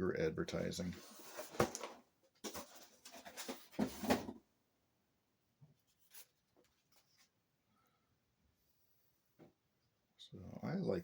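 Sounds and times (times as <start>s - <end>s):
rustles of packaging: 0.9s - 4.3s.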